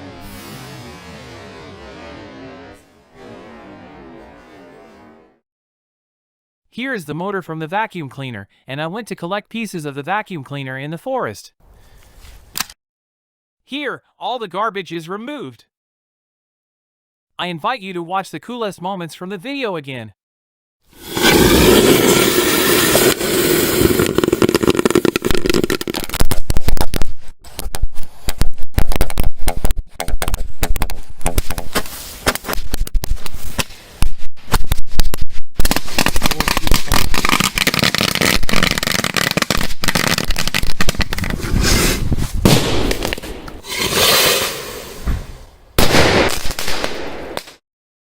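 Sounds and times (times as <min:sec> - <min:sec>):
firecracker strings crackling: 0:35.6 - 0:41.4, 0:42.4 - 0:45.1
loud firecracker bangs: 0:42.4 - 0:47.6.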